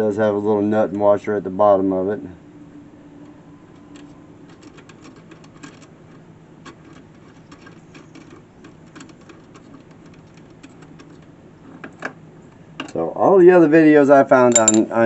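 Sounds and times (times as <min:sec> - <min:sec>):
steady low hum: 0:00.0 - 0:15.0
small metal parts clicking: 0:14.5 - 0:14.8.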